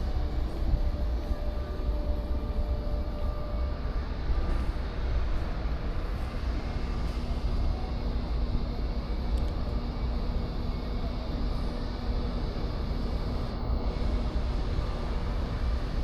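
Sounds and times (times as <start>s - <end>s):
faint machinery humming tones: 0.0s - 16.0s
ship low rumble: 0.0s - 16.0s.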